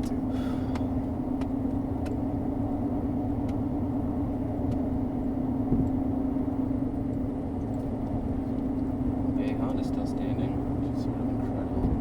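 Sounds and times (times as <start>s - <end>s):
car interior engine and road hum: 0.0s - 12.0s.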